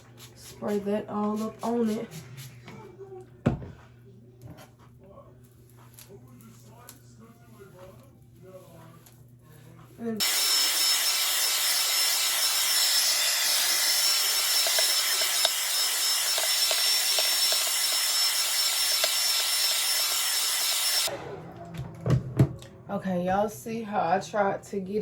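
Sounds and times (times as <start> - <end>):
hair dryer whine: 10.2 - 21.6.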